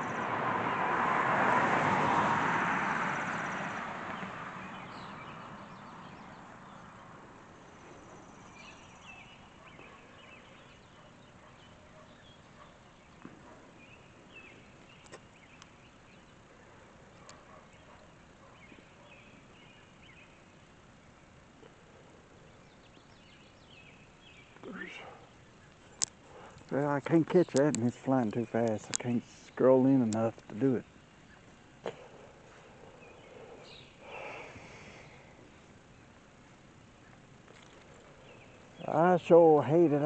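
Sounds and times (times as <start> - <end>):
vehicle passing: 0.0 - 10.4
small birds chirping: 3.2 - 40.0
faint clicks: 17.2 - 17.4, 25.6 - 26.8.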